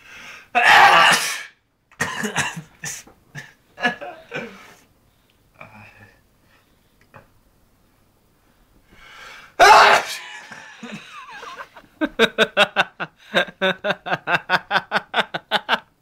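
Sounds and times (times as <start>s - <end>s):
man sneezing: 0.6s - 1.6s, 9.6s - 10.8s.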